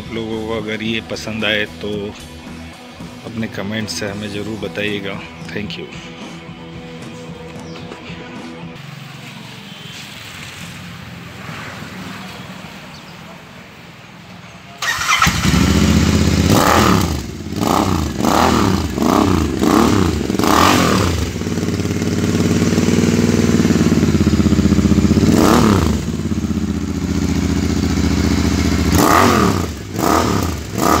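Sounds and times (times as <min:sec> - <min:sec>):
motorcycle engine revving and idling: 0:14.8 - 0:31.0.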